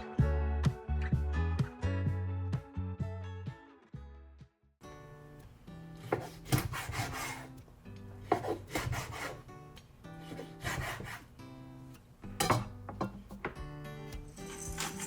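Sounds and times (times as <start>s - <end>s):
background music with steady tones: 0.0s - 15.0s
rasping scraping strokes: 8.3s - 9.4s.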